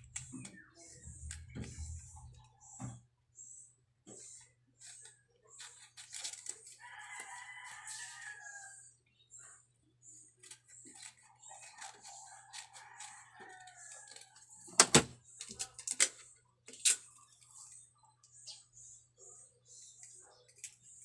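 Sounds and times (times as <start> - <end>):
paper and tape rustling: 4.8 - 8.4, 10.4 - 16.2
rooster crowing: 6.8 - 8.8
sharp clicks and crackles: 14.8 - 18.4.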